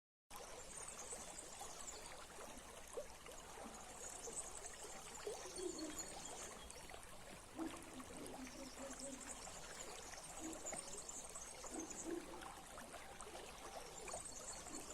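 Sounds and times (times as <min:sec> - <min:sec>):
stream trickling: 0:00.3 - 0:14.9
faint bird chirps: 0:04.2 - 0:06.8.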